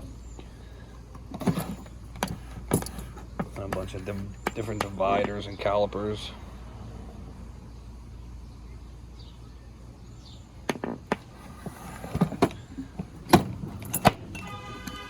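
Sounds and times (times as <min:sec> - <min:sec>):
metal tools clicking in drawers: 0:13.2 - 0:15.0.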